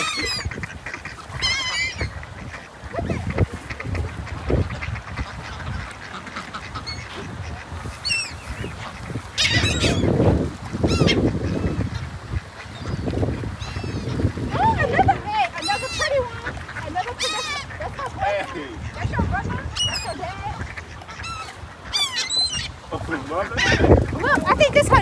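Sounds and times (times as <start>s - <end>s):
waterfowl and gulls squawking: 0.0s - 25.0s.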